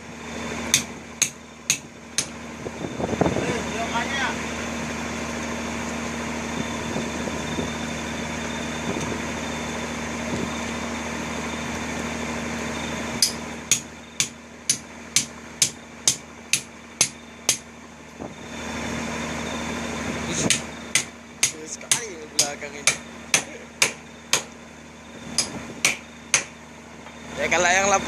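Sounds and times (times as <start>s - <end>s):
motor hum: 0.0s - 28.0s
sharp knocks: 20.5s - 24.5s, 25.4s - 26.6s.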